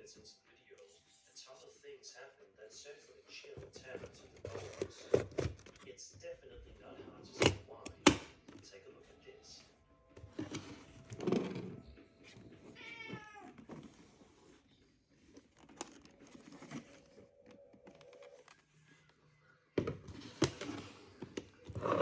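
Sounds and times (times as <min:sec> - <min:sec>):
handling knocks and clicks: 0:07.3 - 0:08.6, 0:15.2 - 0:18.6
cat meowing: 0:12.7 - 0:13.6.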